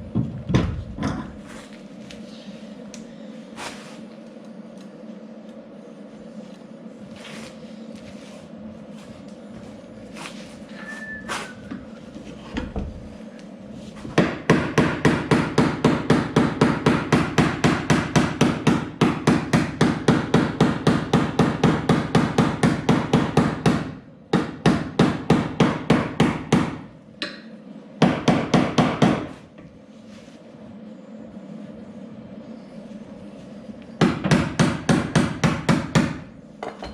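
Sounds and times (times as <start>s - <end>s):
hammer on sheet metal: 14.2s - 27.4s, 28.0s - 29.4s, 34.0s - 36.3s.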